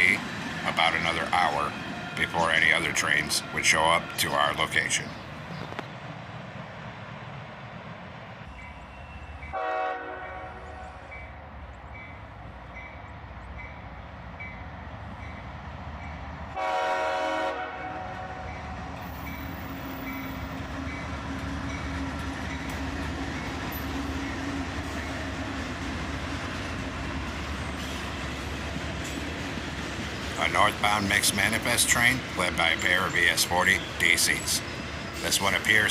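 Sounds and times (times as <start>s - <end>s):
locomotive engine: 0.0s - 35.9s
train rumble: 0.0s - 35.9s
locomotive air horn blasts: 9.5s - 11.1s, 16.6s - 18.5s.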